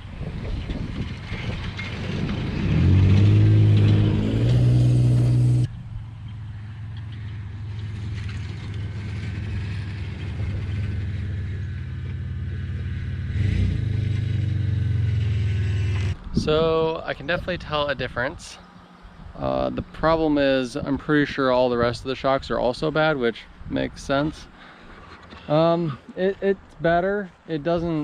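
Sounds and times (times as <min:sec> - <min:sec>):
car engine revving: 0:01.0 - 0:06.1, 0:07.5 - 0:16.2.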